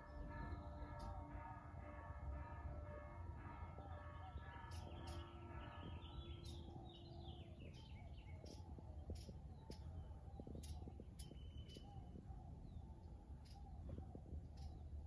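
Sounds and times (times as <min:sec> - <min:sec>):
church bells ringing: 0:00.0 - 0:06.0.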